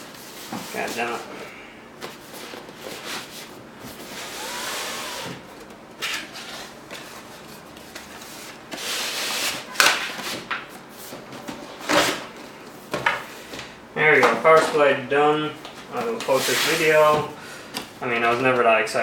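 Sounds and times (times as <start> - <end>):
cardboard rubbing and scraping: 2.1 - 11.2, 16.0 - 17.4.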